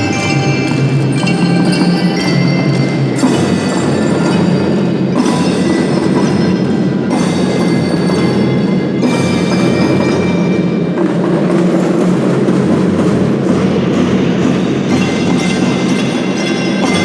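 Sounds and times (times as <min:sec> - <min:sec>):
bell-like mallet percussion: 0:00.0 - 0:17.0
marching drum band playing: 0:00.0 - 0:17.0.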